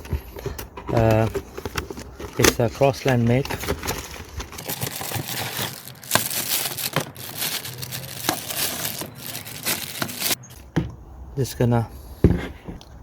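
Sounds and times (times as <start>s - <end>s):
air filter crinkling: 0.0s - 10.4s.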